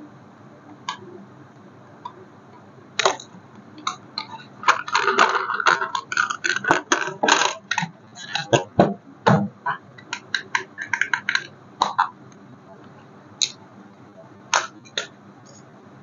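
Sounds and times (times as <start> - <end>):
plastic toy clicking and rattling: 3.0 - 8.7, 10.0 - 12.0.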